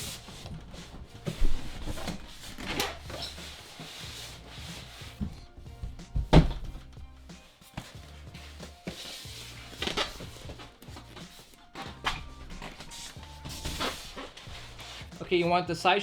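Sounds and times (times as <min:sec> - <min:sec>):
cardboard packaging rubbing and sliding: 0:00.0 - 0:05.8, 0:07.3 - 0:15.4
quiet background music: 0:00.0 - 0:16.0
knocks on cardboard: 0:05.2 - 0:06.9.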